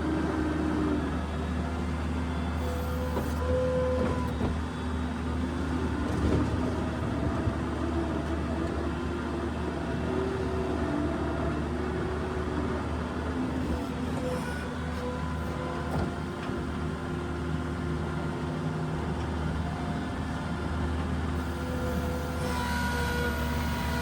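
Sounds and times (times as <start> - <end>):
skid steer engine running: 0.0 - 24.0.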